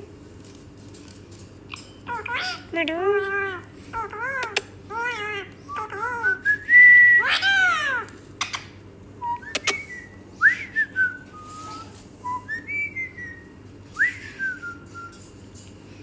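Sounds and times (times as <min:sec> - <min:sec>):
parrot whistling: 0:04.0 - 0:15.1.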